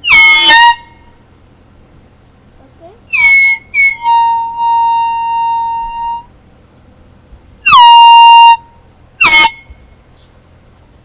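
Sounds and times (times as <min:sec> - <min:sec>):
handheld air horn blasts: 0:04.0 - 0:06.3, 0:07.7 - 0:08.7.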